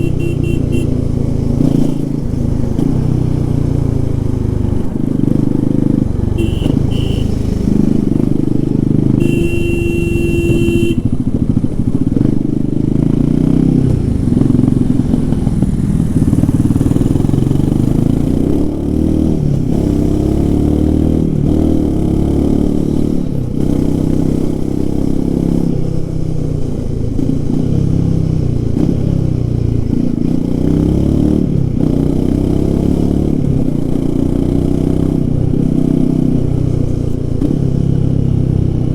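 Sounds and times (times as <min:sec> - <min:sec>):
vehicle horn beeping: 0:00.0 - 0:01.0, 0:06.4 - 0:07.4, 0:09.1 - 0:11.2
motorcycle engine revving: 0:00.0 - 0:38.9.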